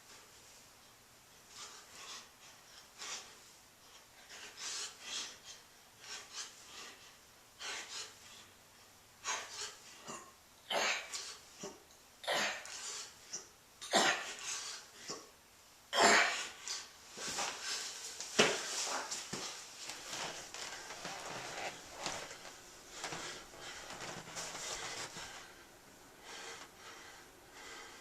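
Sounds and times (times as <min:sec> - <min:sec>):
man breathing hard: 0:16.3 - 0:28.0.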